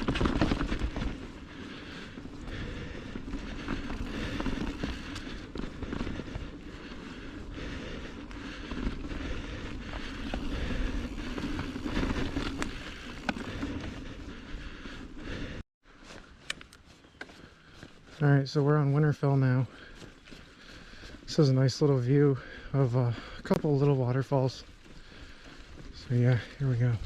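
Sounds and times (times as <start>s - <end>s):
bike clicks and rattles: 0.0s - 15.6s
bike tyres rolling on trail: 0.0s - 27.0s.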